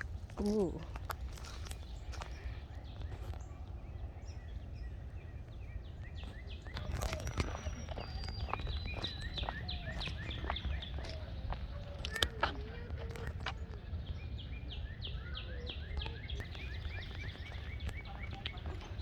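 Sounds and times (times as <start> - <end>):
birds chirping: 0.0 - 19.0
low background rumble: 0.0 - 19.0.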